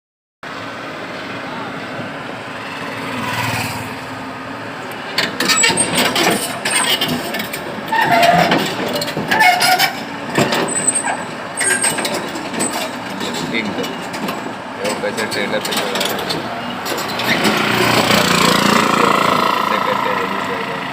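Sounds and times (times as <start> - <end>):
diesel engine running: 0.5 - 20.9
metal clanks: 5.1 - 19.8
short squeaks: 5.3 - 14.1, 15.2 - 18.0.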